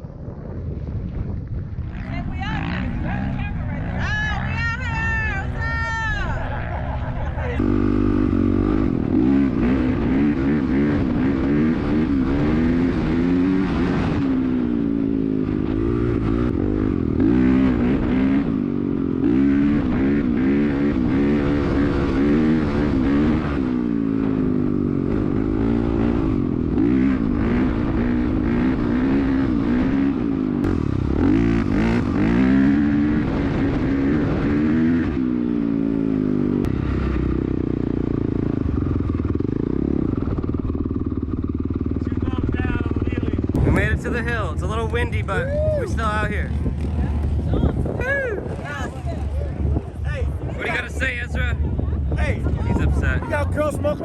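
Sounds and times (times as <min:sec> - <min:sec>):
dirt bike engine revving: 0:01.9 - 0:51.4.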